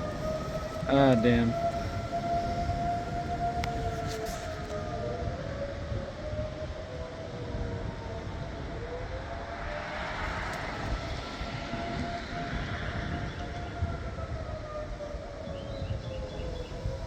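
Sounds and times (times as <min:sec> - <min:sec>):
distant warning sirens wailing: 0:00.0 - 0:17.0
low rumble: 0:07.1 - 0:16.4.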